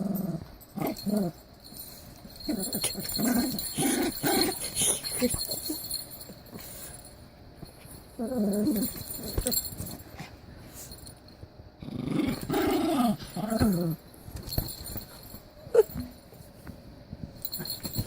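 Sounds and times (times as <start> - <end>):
dog growling and whining: 0.0 - 1.4, 2.4 - 6.0, 8.2 - 10.3, 11.8 - 14.0, 15.6 - 16.2.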